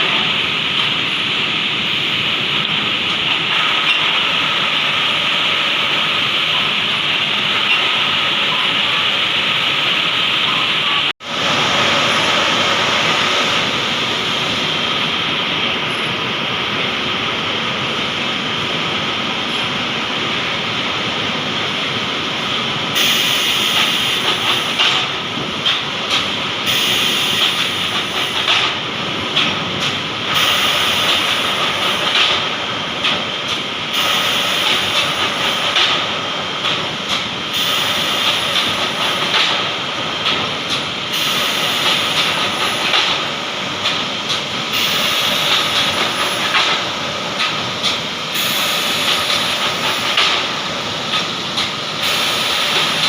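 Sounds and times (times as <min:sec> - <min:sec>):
steady machinery noise: 0:00.0 - 0:53.0
loud hiss: 0:23.0 - 0:24.9, 0:26.6 - 0:28.4, 0:30.3 - 0:32.2, 0:33.9 - 0:36.0, 0:37.4 - 0:39.4, 0:41.0 - 0:43.2, 0:44.6 - 0:53.0.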